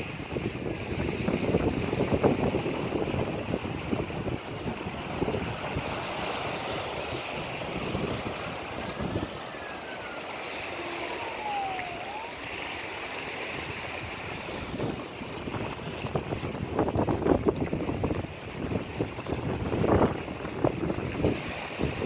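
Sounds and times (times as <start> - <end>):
ocean waves and surf: 0.0 - 22.0
wind buffeting microphone: 0.0 - 22.0
faint downward gliding whistle: 5.8 - 14.1.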